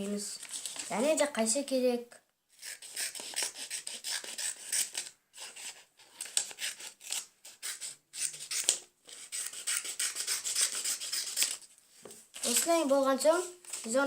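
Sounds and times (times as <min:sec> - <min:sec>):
scissors cutting paper: 0:02.6 - 0:11.6, 0:12.4 - 0:12.9.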